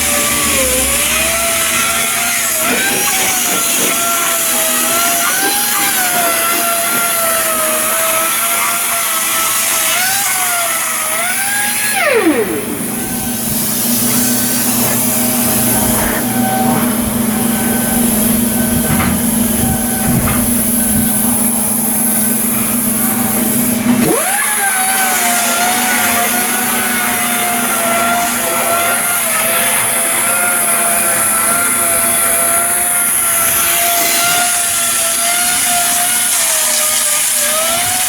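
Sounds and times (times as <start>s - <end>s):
low hum: 0.0s - 3.9s, 12.0s - 22.2s
power tool whining: 0.0s - 38.0s.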